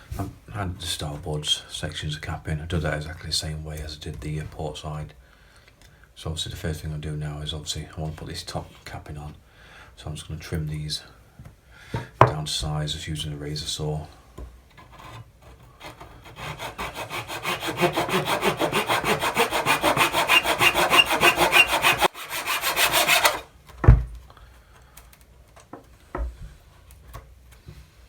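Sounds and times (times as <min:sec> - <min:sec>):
saw cutting through wood: 0:15.8 - 0:23.5.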